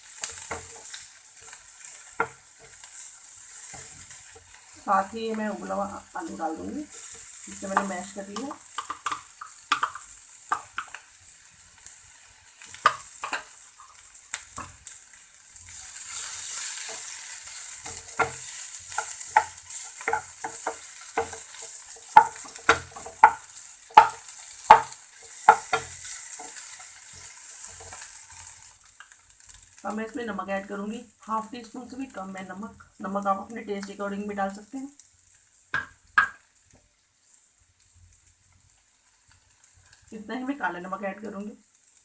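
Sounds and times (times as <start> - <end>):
spatula scraping and clacking pan: 0.0 - 5.8, 6.6 - 15.0, 15.6 - 29.7
vegetables sizzling in oil: 0.0 - 42.0.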